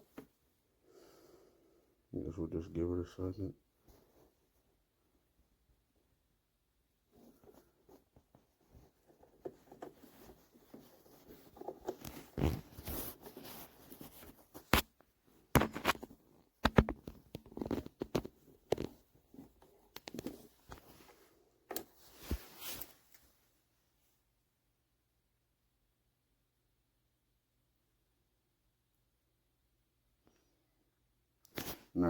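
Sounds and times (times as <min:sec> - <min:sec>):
handling rustles and taps: 0:00.0 - 0:00.4, 0:07.1 - 0:23.3.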